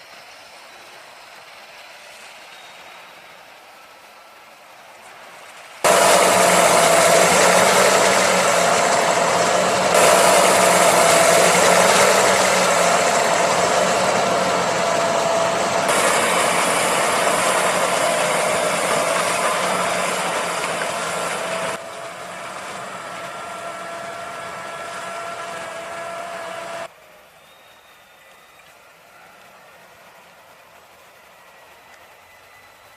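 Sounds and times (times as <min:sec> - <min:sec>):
constant engine whine: 0:05.0 - 0:26.9
tractor engine under load: 0:05.9 - 0:26.9.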